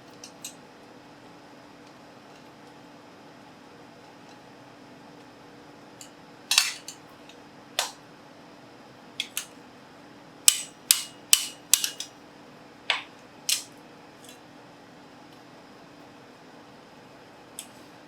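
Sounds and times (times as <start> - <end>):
metal-on-metal clacks: 10.5 - 12.1.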